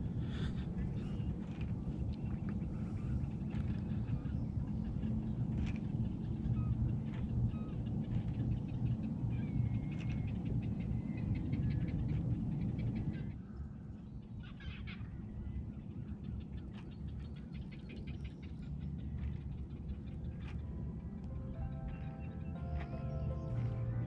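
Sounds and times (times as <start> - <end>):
low steady rumble: 0.0 - 24.0
rapid clicking animal calls: 0.4 - 13.2
chirps: 21.3 - 24.0.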